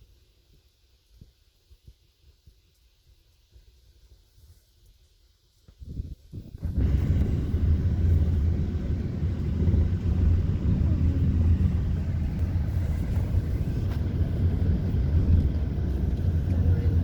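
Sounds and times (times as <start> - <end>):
vehicle engine rumbling: 6.4 - 17.0.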